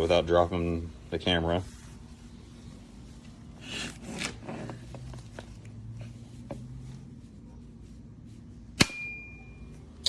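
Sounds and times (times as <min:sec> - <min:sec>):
blade clamp rustling scrapes: 0:03.2 - 0:06.6.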